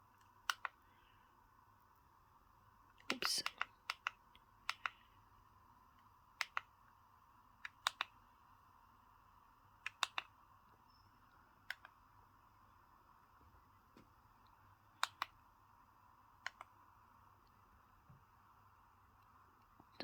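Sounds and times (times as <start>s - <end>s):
plastic push-buttons clicking: 3.4s - 5.0s, 7.6s - 8.2s, 9.8s - 10.3s, 15.0s - 15.4s.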